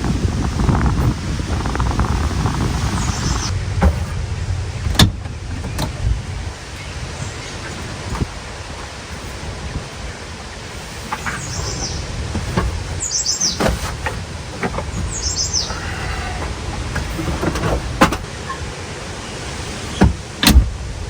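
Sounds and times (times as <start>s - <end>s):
birds chirping: 0.0s - 3.6s, 5.2s - 20.4s
steady low rumble: 0.0s - 13.0s.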